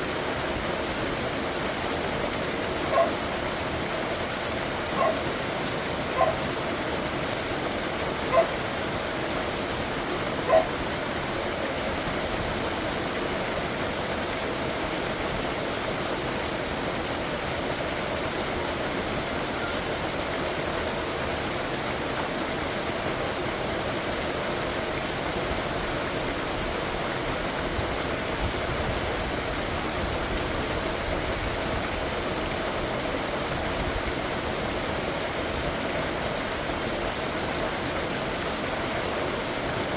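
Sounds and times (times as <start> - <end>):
waterfall rushing: 0.0 - 39.9
dog yipping: 2.9 - 3.2, 5.0 - 5.2, 6.2 - 6.4, 8.3 - 8.5, 10.5 - 10.7.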